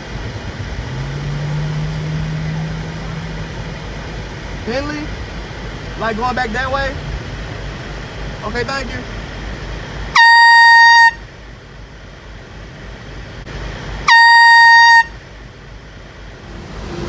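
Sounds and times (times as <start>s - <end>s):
air horn blasts: 10.1s - 11.4s, 14.0s - 15.4s.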